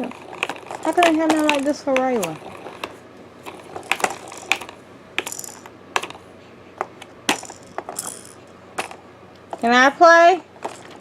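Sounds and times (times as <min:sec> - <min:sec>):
plastic toy clicking and rattling: 0:00.0 - 0:02.9, 0:03.5 - 0:06.2, 0:07.3 - 0:08.9.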